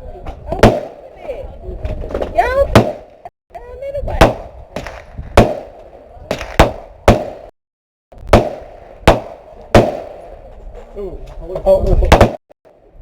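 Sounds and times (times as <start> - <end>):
gunshots with echo: 0.6 - 1.0, 4.2 - 7.5, 8.4 - 10.3.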